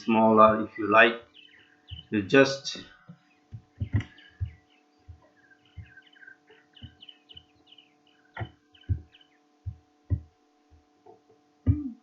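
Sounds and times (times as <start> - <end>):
electrical hum: 0.0 - 12.0
dull low thumps: 0.3 - 1.0, 1.9 - 2.2, 3.5 - 6.1, 8.4 - 10.4.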